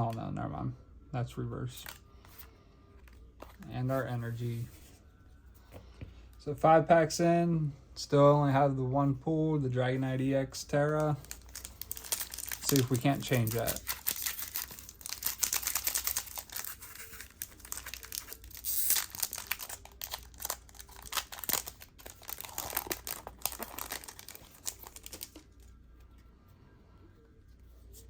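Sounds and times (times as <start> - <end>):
foil wrapper crinkling and tearing: 11.0 - 25.6.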